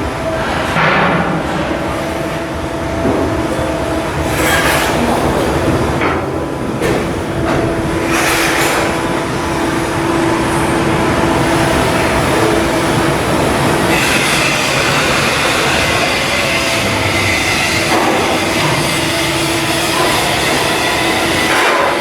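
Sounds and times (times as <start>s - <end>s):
heavy machinery noise: 0.0s - 22.0s
metallic squealing: 7.6s - 22.0s
high squeal: 11.3s - 21.5s.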